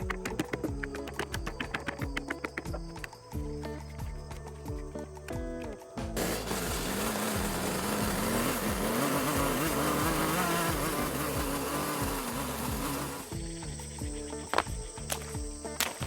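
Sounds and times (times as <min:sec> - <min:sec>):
chainsaw cutting wood: 0:06.2 - 0:13.6.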